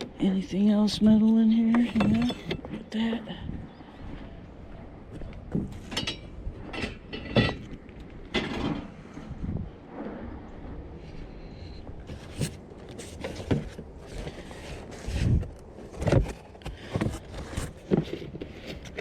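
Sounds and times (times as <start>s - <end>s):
steady low rumble: 0.0s - 17.4s
trash knocks and rustles: 12.1s - 19.0s.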